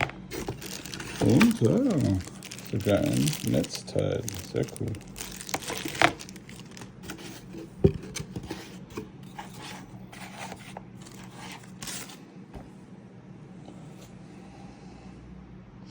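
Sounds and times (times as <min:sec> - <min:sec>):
packaging rustles and scrapes: 0:00.0 - 0:12.2.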